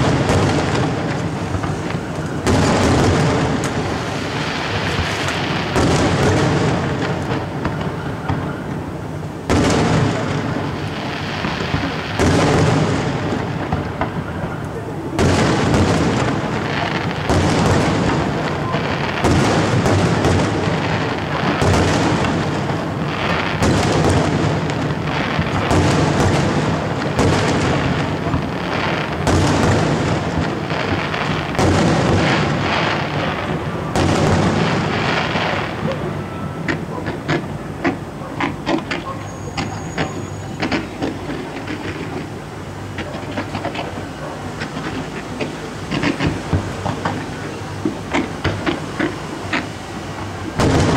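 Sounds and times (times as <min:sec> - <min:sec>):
fireworks booming: 0:00.0 - 0:50.9
fireworks crackling pops: 0:00.0 - 0:50.9.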